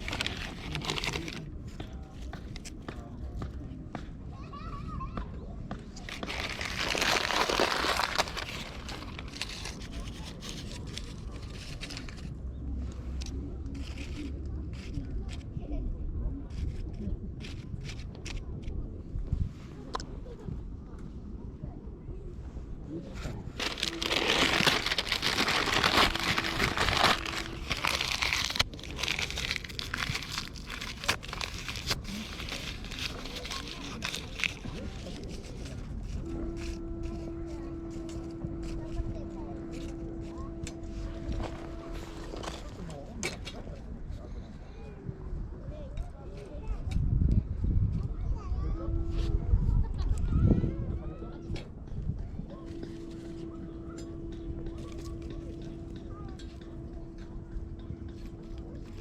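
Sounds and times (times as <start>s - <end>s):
twigs crackling and snapping: 0.0s - 2.8s, 6.0s - 12.3s, 23.6s - 36.8s.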